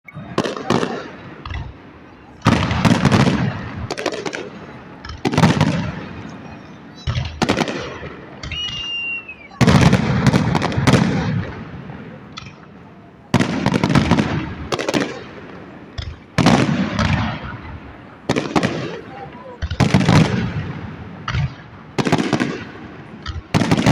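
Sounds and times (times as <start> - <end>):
fireworks loud bangs: 0.1 - 23.9
short high whistle: 8.4 - 9.6.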